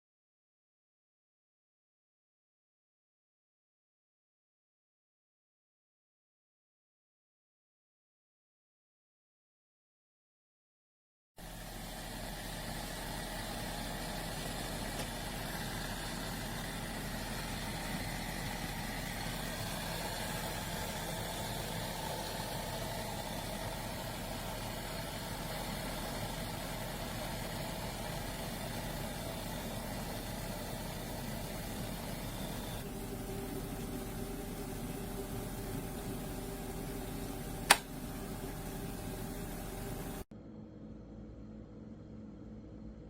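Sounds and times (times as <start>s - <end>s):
electric kettle heating water: 11.4s - 40.2s.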